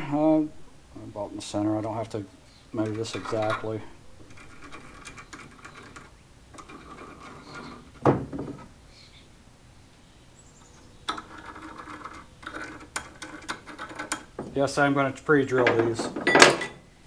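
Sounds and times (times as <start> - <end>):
lumber and hardware handling: 1.4 - 8.8, 10.7 - 16.9.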